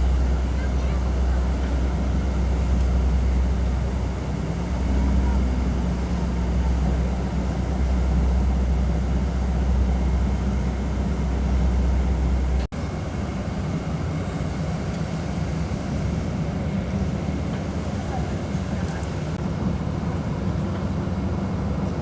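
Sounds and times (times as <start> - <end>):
heavy machinery engine rumble: 0.0 - 22.0.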